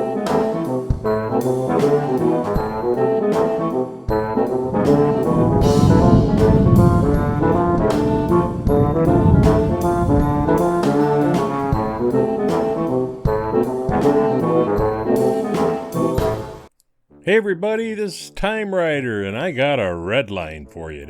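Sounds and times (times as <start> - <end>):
upbeat brass instrumental music: 0.0 - 21.0
steady beat: 4.4 - 11.6.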